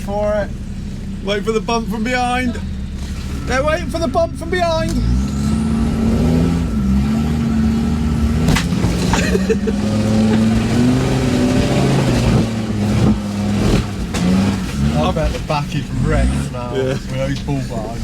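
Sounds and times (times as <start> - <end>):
engine running and revving: 0.0 - 18.0.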